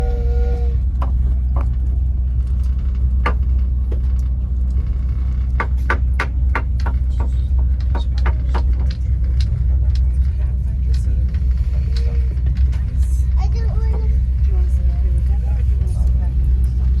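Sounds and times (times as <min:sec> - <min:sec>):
train low rumble: 0:00.0 - 0:17.0.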